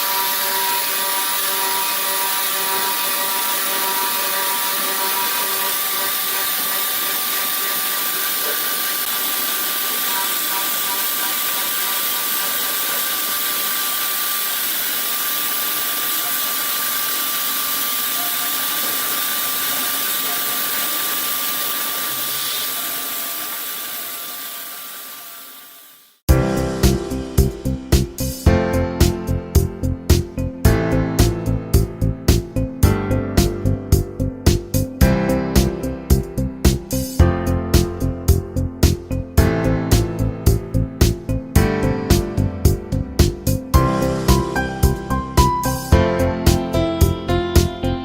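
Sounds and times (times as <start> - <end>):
machine tool cutting with whine: 0.0 - 26.2.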